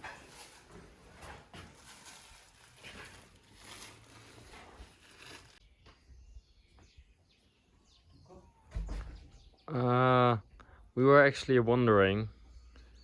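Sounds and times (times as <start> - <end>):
faint rustling handling noise: 0.0 - 5.6.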